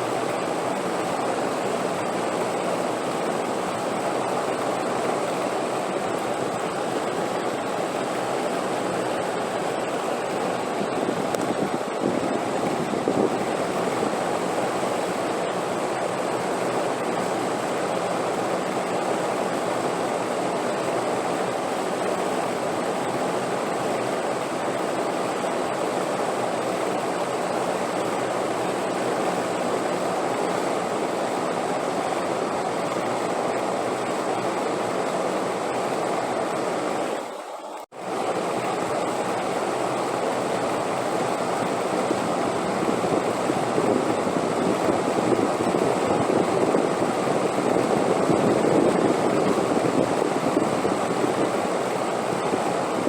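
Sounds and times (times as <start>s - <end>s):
wind blowing: 4.8s - 17.0s, 38.2s - 53.0s.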